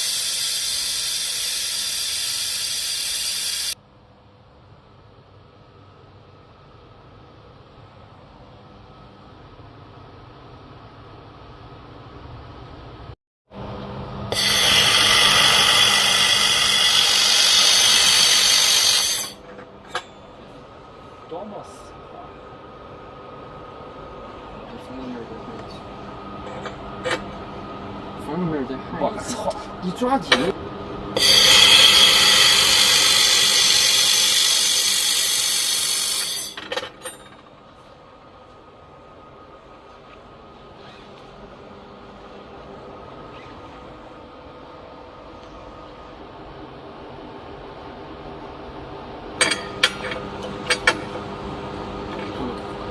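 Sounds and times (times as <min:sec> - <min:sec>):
loud steady hiss of welder: 0:00.0 - 0:03.8, 0:14.3 - 0:19.4, 0:31.2 - 0:36.6.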